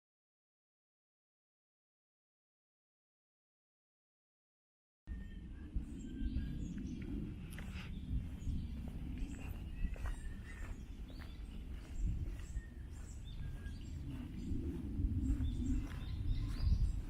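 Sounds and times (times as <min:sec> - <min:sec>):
bird chirps: 0:05.1 - 0:17.0
walking footsteps: 0:06.3 - 0:17.0.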